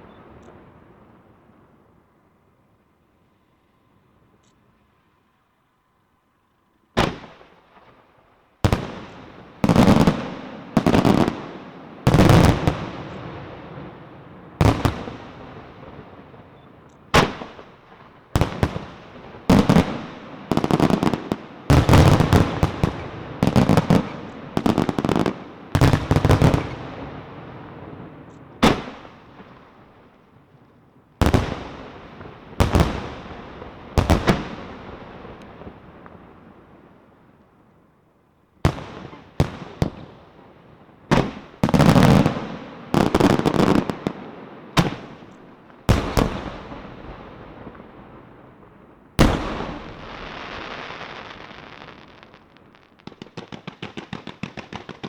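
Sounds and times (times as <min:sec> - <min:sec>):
fireworks booming: 0:08.6 - 0:30.0, 0:31.2 - 0:36.9, 0:38.6 - 0:55.0.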